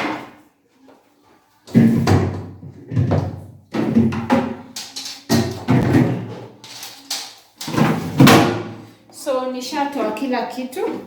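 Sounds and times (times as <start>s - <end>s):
plastic fridge shelves knocking: 1.8s - 4.7s.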